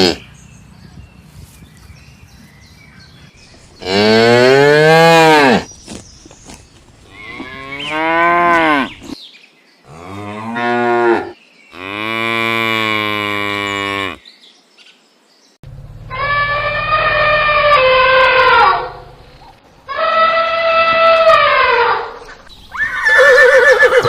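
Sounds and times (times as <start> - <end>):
cow mooing: 16.1 - 19.1.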